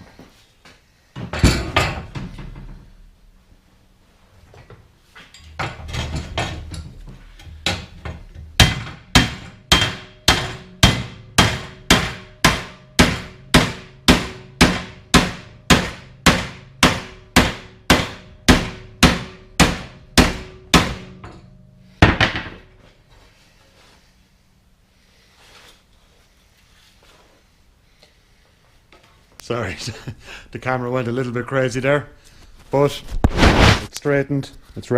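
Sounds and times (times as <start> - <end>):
hammer striking steel: 7.5 - 22.6.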